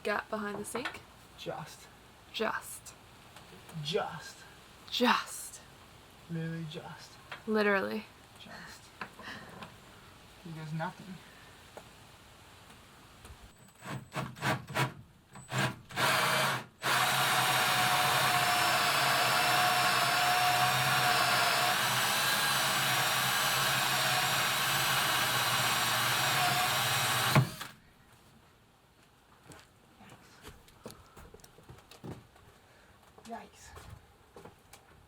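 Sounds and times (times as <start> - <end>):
power drill running: 15.5 - 27.8.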